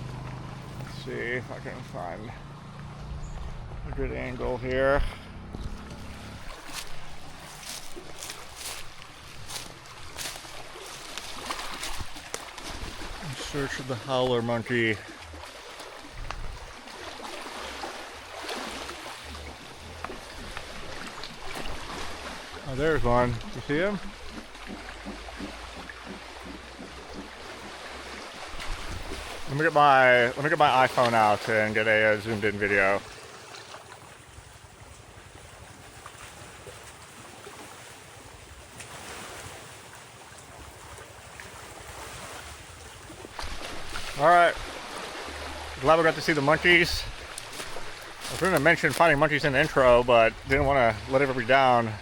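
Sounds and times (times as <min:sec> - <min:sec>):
wind buffeting microphone: 0:03.0 - 0:12.2, 0:16.0 - 0:16.8, 0:46.9 - 0:51.1
wind blowing across microphone: 0:16.1 - 0:16.8.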